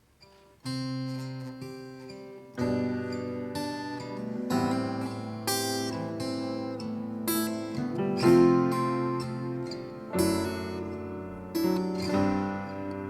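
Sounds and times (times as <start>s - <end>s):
acoustic guitar strummed chords: 0.2s - 13.0s.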